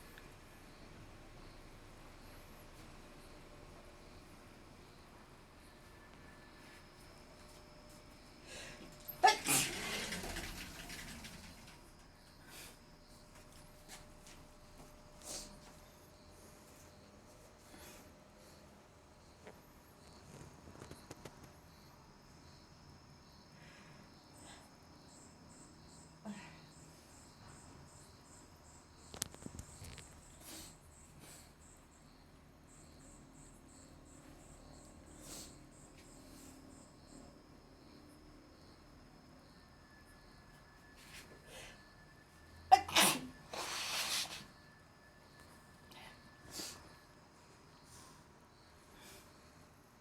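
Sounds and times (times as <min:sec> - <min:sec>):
woman sneezing: 0:09.2 - 0:09.8, 0:42.7 - 0:43.4.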